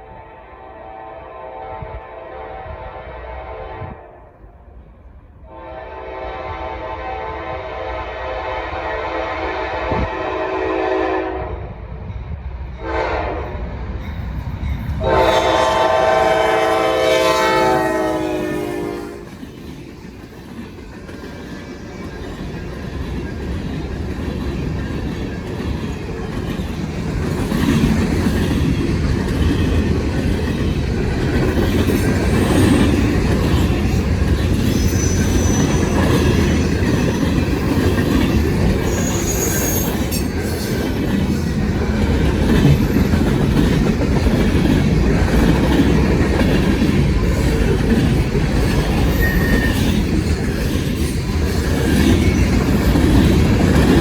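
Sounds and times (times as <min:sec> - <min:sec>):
freight train wheels clattering: 0:13.6 - 0:54.0
wheel squeals: 0:34.5 - 0:37.1, 0:38.2 - 0:41.0, 0:48.7 - 0:53.9.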